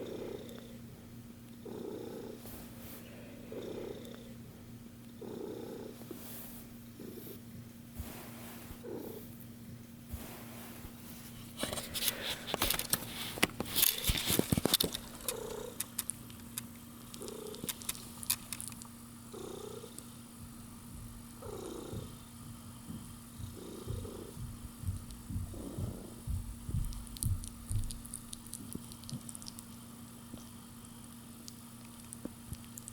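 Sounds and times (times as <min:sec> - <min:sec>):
kitten purring: 0:00.0 - 0:29.8
crackling rustle: 0:10.2 - 0:18.9.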